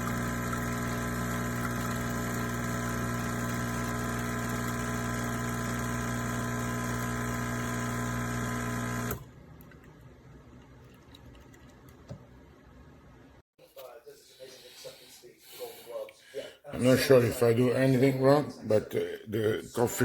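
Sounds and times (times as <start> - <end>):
espresso machine pump humming: 0.0 - 9.8.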